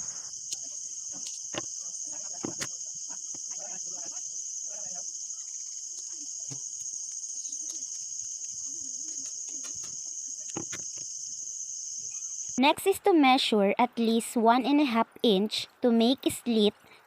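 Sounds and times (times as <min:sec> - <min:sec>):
crickets chirping: 0:00.0 - 0:13.3.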